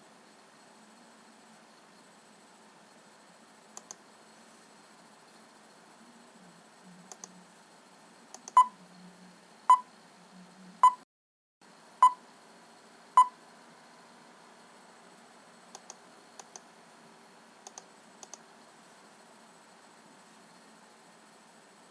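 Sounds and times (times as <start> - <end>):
soft faint clicks: 3.8 - 4.0, 7.1 - 7.4, 15.7 - 16.7, 17.6 - 18.4.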